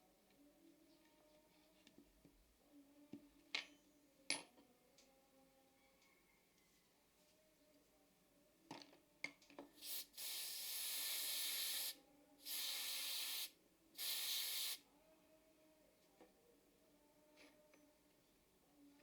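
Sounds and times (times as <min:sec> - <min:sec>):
pressurised spray hissing: 0:09.8 - 0:14.8.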